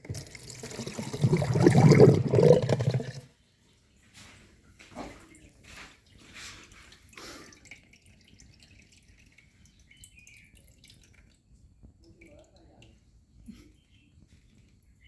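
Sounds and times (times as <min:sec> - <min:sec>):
faint water trickle: 0:00.0 - 0:15.0
water splashing and dripping: 0:05.6 - 0:13.0.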